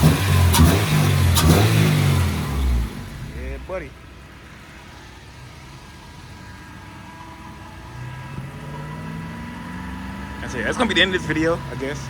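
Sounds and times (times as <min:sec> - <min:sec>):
car engine idling: 0:00.0 - 0:07.9.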